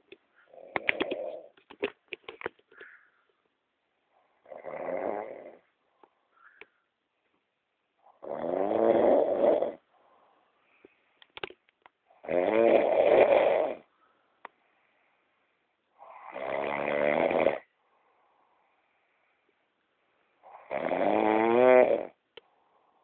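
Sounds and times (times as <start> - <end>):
jaw clicking: 0.6 - 2.9
woman snoring heavily: 4.4 - 5.6, 8.1 - 9.8, 12.2 - 13.9, 16.0 - 17.7, 20.4 - 22.2.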